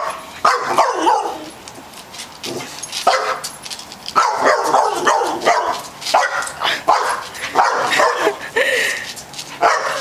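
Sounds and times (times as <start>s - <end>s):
dog barking in high yips: 0.0s - 1.5s, 3.0s - 3.4s, 4.2s - 8.4s, 9.6s - 10.0s.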